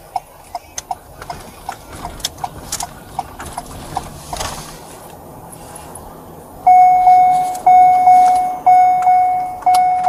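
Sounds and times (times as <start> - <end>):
electronic beeper tone: 6.6 - 10.0.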